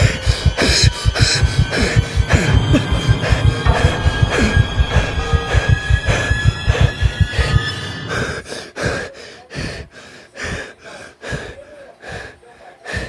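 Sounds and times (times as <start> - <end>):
person breathing fast and hard: 8.1 - 13.0.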